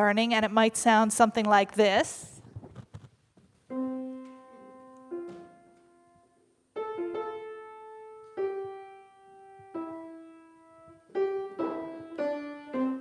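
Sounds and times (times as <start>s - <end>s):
slow halting piano notes: 3.7s - 13.0s.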